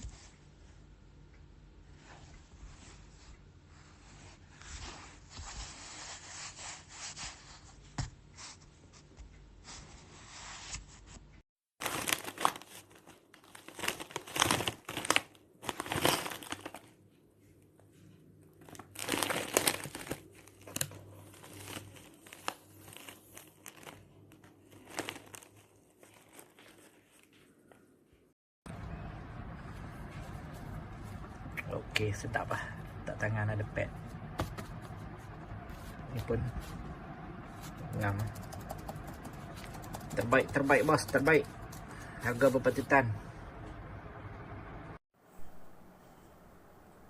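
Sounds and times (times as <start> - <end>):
plastic wrapper crinkling: 11.8 - 17.0, 18.6 - 27.5.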